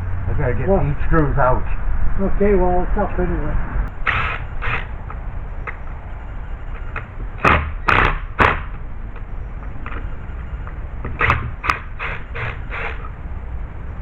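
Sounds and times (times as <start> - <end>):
low steady rumble: 0.0 - 14.0
gate clattering: 3.8 - 14.0
sharp knocks: 3.9 - 13.2.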